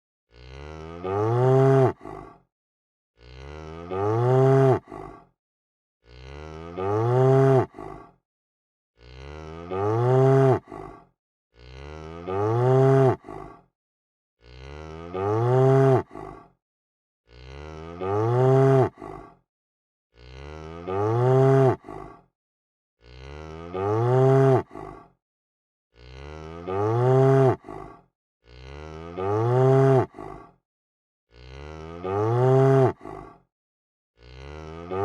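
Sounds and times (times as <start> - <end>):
cow mooing: 0.3 - 2.0, 3.2 - 4.9, 6.1 - 7.7, 9.0 - 10.7, 11.6 - 13.3, 14.4 - 16.1, 17.3 - 19.0, 20.2 - 21.9, 23.0 - 24.7, 26.0 - 27.7, 28.5 - 30.2, 31.3 - 33.0, 34.2 - 35.0
cow grunt: 0.3 - 2.5, 3.2 - 5.4, 6.0 - 8.2, 9.0 - 13.7, 14.4 - 16.6, 17.3 - 19.4, 20.1 - 22.3, 23.0 - 25.2, 25.9 - 30.6, 31.3 - 33.5, 34.2 - 35.0.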